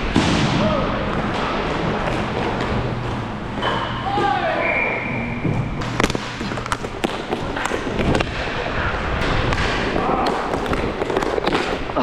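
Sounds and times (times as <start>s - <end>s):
inline skate wheels rolling: 1.0s - 12.0s
sticks clacking on puck: 5.8s - 8.4s, 9.2s - 12.0s.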